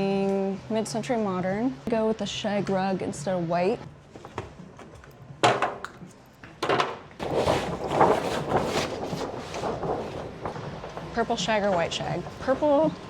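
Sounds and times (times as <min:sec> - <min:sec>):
rug rustling: 0:07.1 - 0:11.4.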